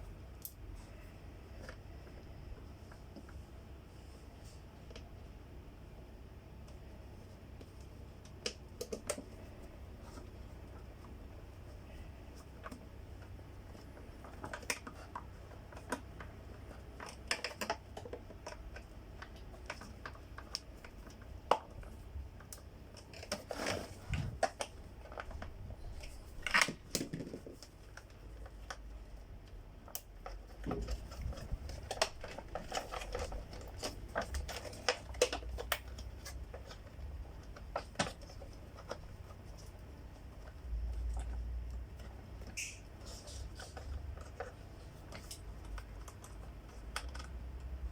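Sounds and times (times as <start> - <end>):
plastic parts clicking and knocking: 12.6 - 28.8, 29.8 - 39.7.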